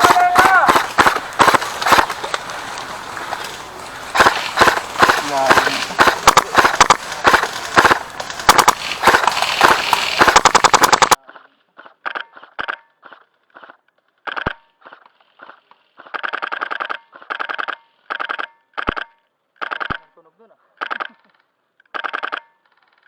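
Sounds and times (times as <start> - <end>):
airsoft guns firing bursts: 0.0 - 11.2.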